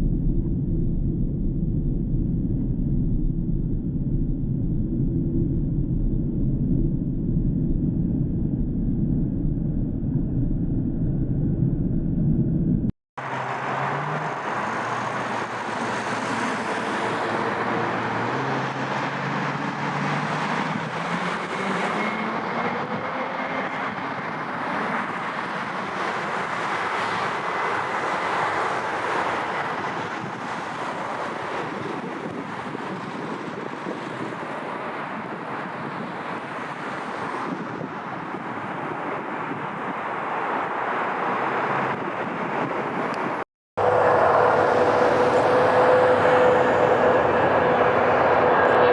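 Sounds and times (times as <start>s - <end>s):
jet airliner engines: 0.0s - 48.9s
rising engine tones: 10.0s - 25.2s, 43.8s - 48.9s.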